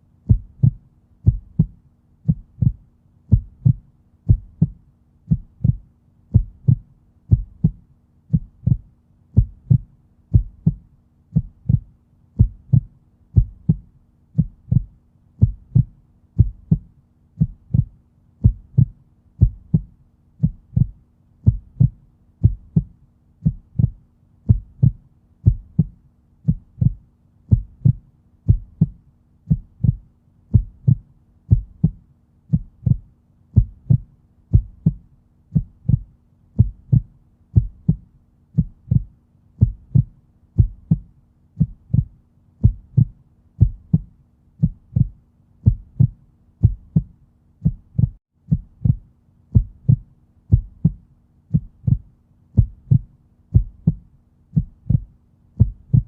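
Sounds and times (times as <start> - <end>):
faint steady hum: 0.0 - 56.0
slow heartbeat: 0.2 - 56.0.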